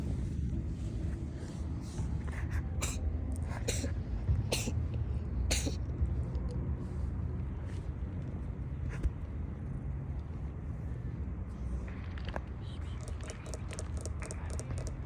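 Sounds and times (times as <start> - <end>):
steady low rumble: 0.0 - 15.0
cat sneezing: 2.6 - 3.0, 3.6 - 4.8, 5.5 - 5.8.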